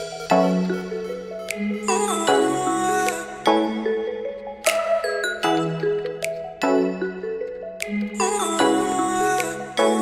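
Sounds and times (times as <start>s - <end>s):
mallet melody: 0.0s - 10.0s.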